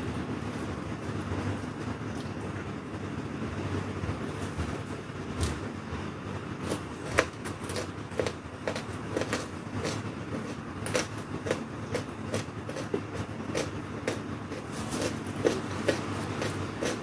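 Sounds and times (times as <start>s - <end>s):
chewing raw vegetables: 6.6s - 17.0s.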